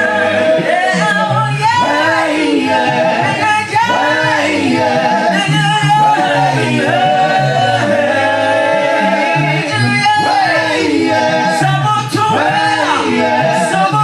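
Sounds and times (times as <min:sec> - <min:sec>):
vocal group singing in harmony: 0:00.0 - 0:14.0.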